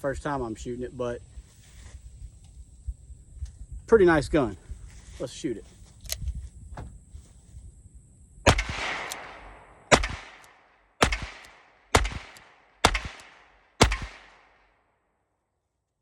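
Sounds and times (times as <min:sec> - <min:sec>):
revolver shots with echo: 0:08.5 - 0:14.6.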